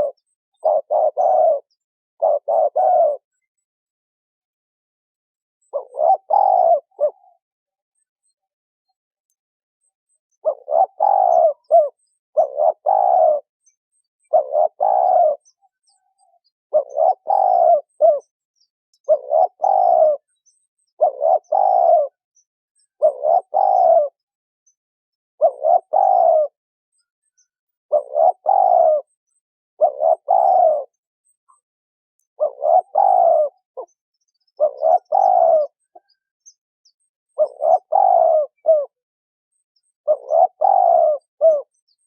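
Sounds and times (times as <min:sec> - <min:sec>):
dove cooing: 0:00.0 - 0:03.4, 0:05.6 - 0:07.4, 0:10.4 - 0:13.5, 0:14.3 - 0:18.3, 0:19.0 - 0:22.2, 0:23.0 - 0:24.2, 0:25.4 - 0:26.6, 0:27.9 - 0:29.1, 0:29.8 - 0:31.0, 0:32.4 - 0:36.2, 0:37.4 - 0:39.0, 0:40.0 - 0:42.0.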